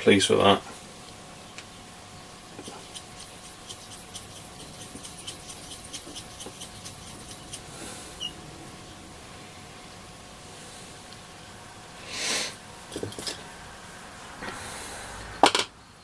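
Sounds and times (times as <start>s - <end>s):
brush ticking in paint pot: 2.6s - 8.3s.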